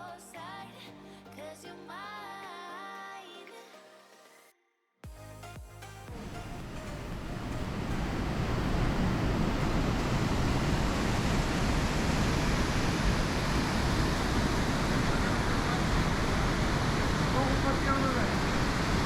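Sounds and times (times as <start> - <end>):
waterfall rushing: 6.2 - 19.0.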